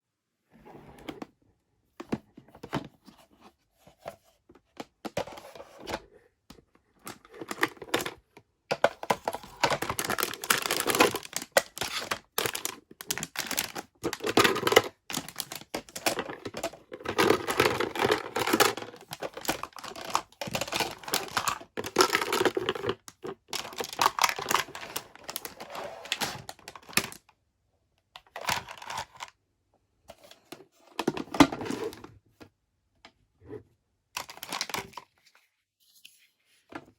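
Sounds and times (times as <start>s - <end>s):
plastic packaging crinkling and tearing: 9.0s - 27.2s.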